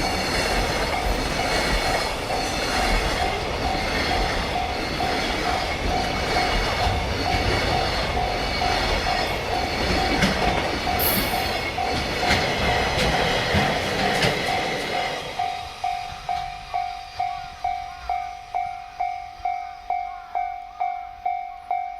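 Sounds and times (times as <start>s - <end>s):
train wheels clattering over rail joints: 0.0s - 16.8s
level-crossing alarm ringing: 0.0s - 21.9s.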